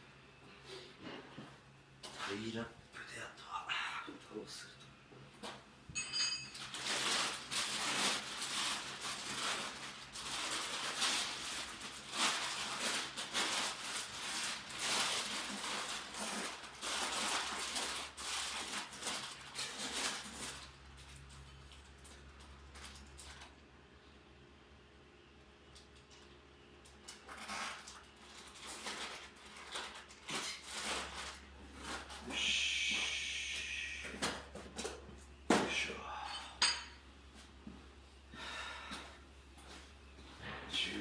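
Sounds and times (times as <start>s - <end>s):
plastic rustling and crinkling: 6.5s - 23.6s, 27.0s - 32.5s.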